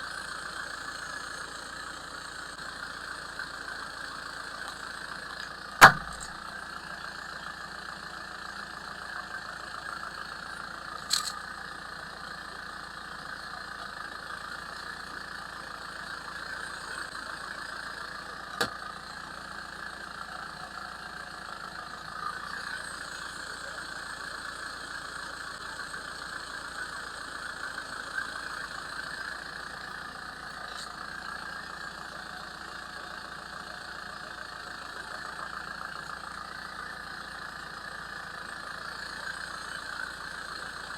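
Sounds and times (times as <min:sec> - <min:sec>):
machine drone: 0:00.0 - 0:40.9
sharp cracks: 0:05.8 - 0:06.3.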